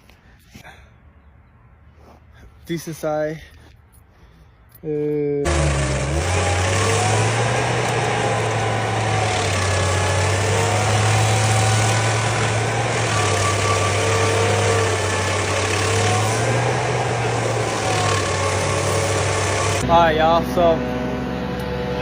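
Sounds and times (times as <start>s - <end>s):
large engine running: 5.4s - 22.0s.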